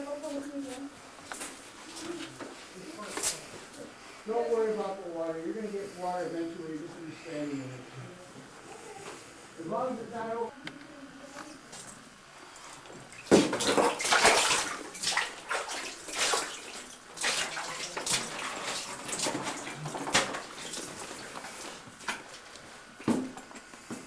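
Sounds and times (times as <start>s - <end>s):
water splashing and sloshing: 12.8s - 22.5s.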